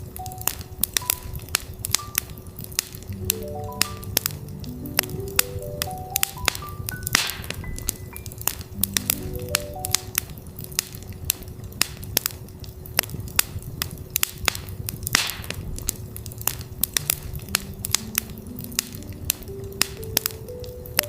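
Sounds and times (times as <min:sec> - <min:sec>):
campfire crackling and popping: 0:00.0 - 0:21.0
fire hiss: 0:00.0 - 0:21.0
low steady hum: 0:00.0 - 0:21.0
soft synth notes: 0:00.2 - 0:11.3.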